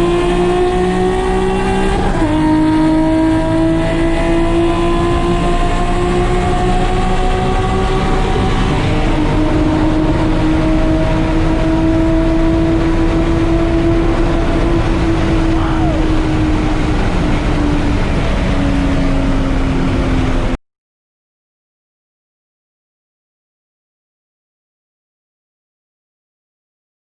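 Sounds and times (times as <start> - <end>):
car engine at high revs: 0.0 - 20.6
wind and road noise: 0.0 - 20.6.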